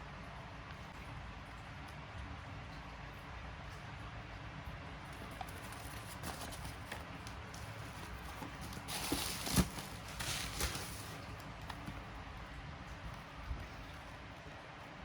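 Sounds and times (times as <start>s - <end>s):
packaging rustling: 5.2s - 12.1s.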